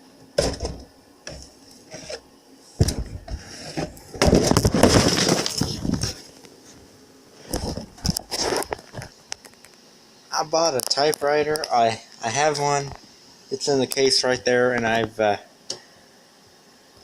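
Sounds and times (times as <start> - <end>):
objects knocking and clattering: 0.4 - 1.5, 2.8 - 6.2
scraping noise: 1.8 - 2.2, 3.1 - 4.0.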